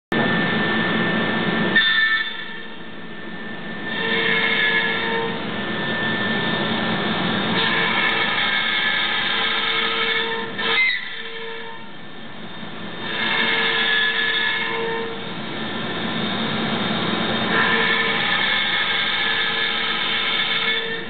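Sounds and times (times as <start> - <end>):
cutting machine whining: 0.2 - 11.2, 17.0 - 21.0.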